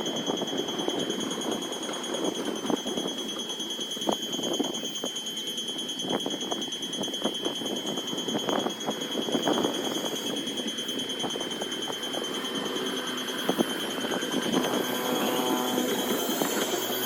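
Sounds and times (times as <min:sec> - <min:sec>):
level-crossing warning bell: 0:00.0 - 0:17.0.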